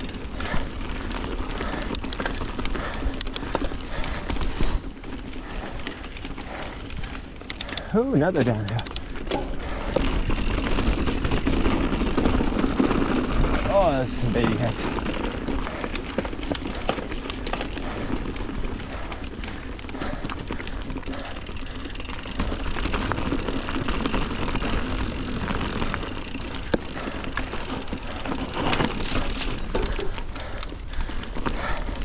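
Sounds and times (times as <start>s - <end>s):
bike rattling and clicking: 0.0s - 32.0s.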